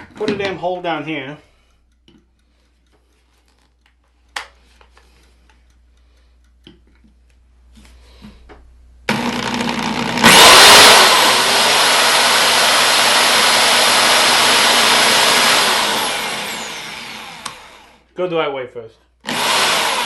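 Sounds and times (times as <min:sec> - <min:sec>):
electric drill whining: 0:09.1 - 0:18.1, 0:19.2 - 0:20.0.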